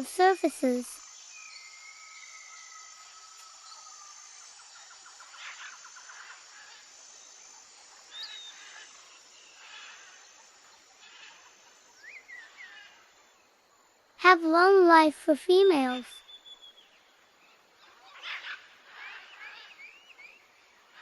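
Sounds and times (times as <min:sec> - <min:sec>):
insect chirping: 0:00.0 - 0:14.2.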